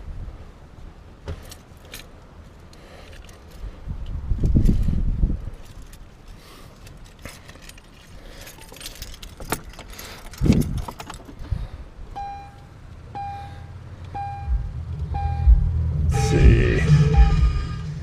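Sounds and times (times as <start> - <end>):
keys jangling and clicking: 1.4 - 3.7, 5.5 - 11.5
vehicle warning chime dinging: 12.2 - 18.0.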